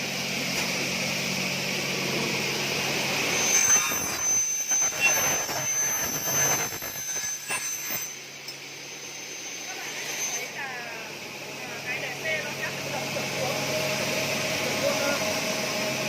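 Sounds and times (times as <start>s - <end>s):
cutting saw cutting aluminium: 0.0s - 11.1s.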